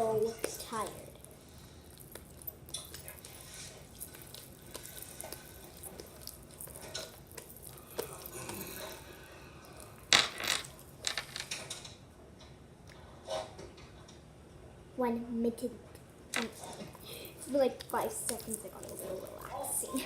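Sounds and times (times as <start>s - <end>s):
slime clicking and scraping in bowl: 0.0s - 9.0s, 17.6s - 19.6s.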